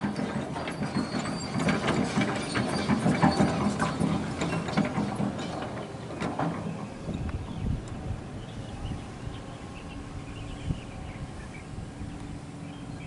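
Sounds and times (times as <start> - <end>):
rapid clicking of gears: 0.0 - 8.0.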